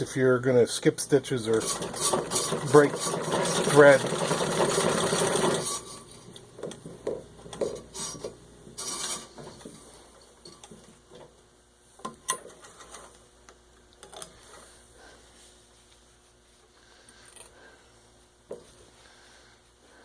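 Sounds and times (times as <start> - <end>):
treadle sewing machine stitching: 1.5 - 6.0.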